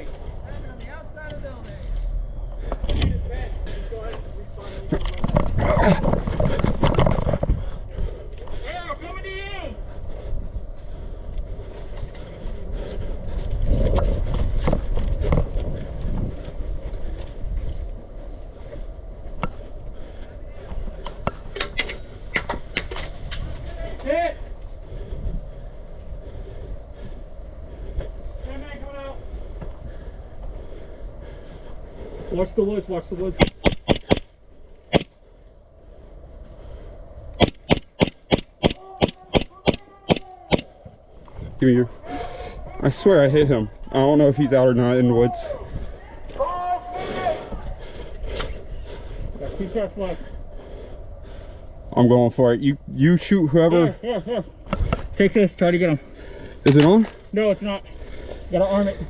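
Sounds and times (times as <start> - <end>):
airsoft gun shots: 33.4 - 34.3, 34.9 - 35.1, 37.4 - 40.7.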